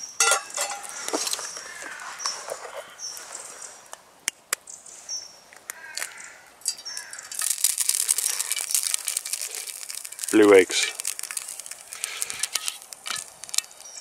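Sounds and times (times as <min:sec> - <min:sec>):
birds chirping: 0:00.0 - 0:04.0, 0:04.6 - 0:07.4
dense crackling hiss: 0:00.0 - 0:14.0
harsh crow-like call: 0:05.7 - 0:07.4.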